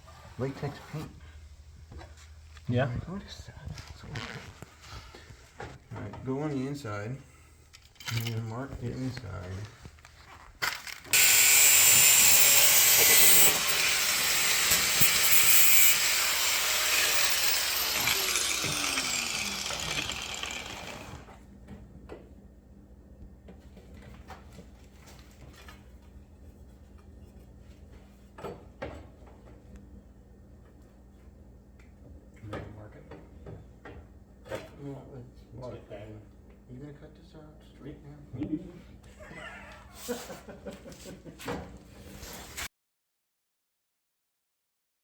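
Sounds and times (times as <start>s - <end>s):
power tool running: 11.1s - 21.4s.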